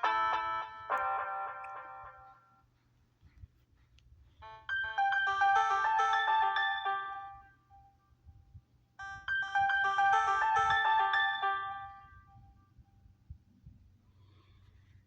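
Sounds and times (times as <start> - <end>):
phone ringtone melody: 0.0 - 2.6, 4.4 - 8.0, 9.0 - 12.6.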